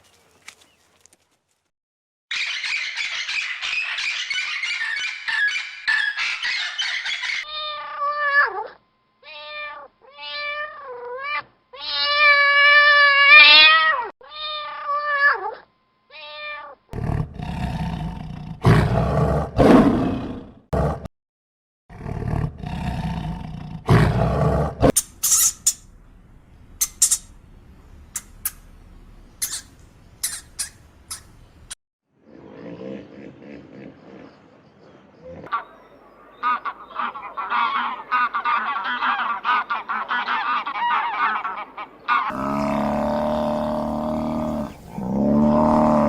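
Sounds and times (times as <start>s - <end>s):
meow-like animal cries: 7.4s - 16.9s
deep growling roars: 17.0s - 21.1s, 21.9s - 24.9s, 42.3s - 46.0s
high squeaks and clicks: 24.9s - 26.0s, 26.7s - 27.4s, 28.1s - 28.7s, 29.4s - 31.4s.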